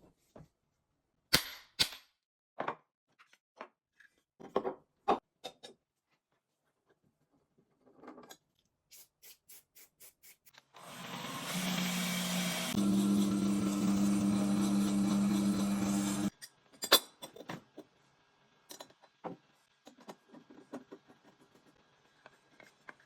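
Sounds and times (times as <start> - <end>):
plane strokes: 11.5 - 16.3.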